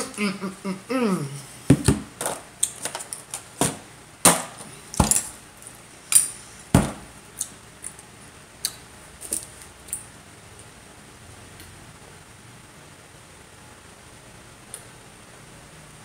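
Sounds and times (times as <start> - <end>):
utensils knocking on food containers: 1.7 - 2.4, 3.6 - 5.3, 6.8 - 7.1.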